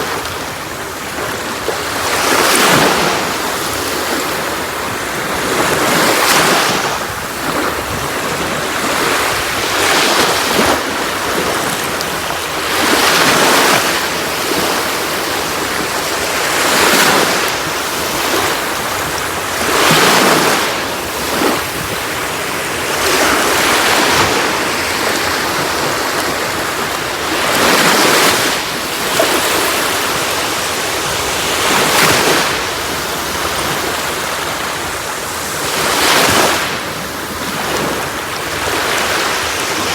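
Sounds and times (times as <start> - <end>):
sea waves breaking on shore: 0.0 - 39.9.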